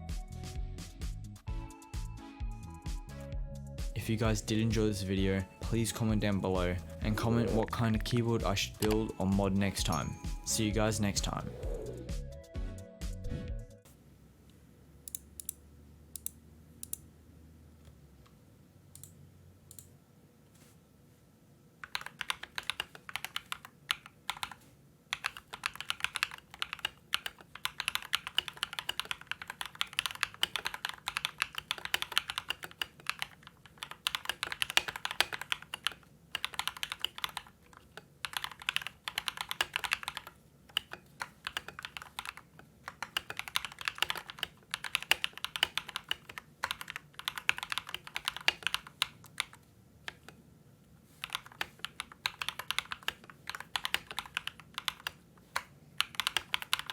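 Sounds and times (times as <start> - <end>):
mechanical keyboard typing: 7.5 - 9.2, 21.8 - 50.4, 51.1 - 56.9.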